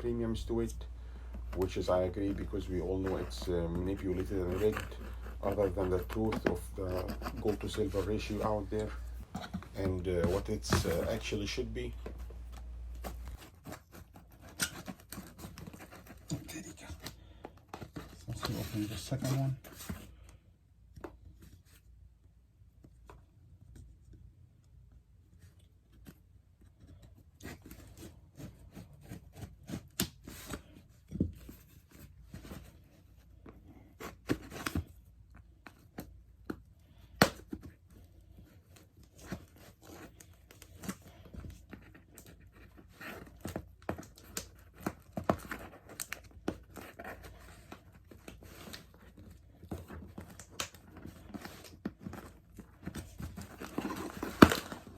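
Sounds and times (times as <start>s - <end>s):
package tearing and rustling: 43.2s - 54.9s.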